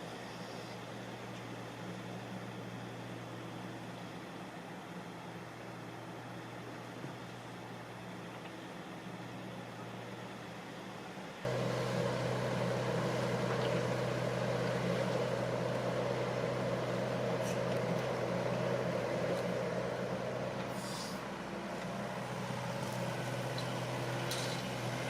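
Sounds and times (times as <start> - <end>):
heavy diesel engine running: 11.5 - 25.0.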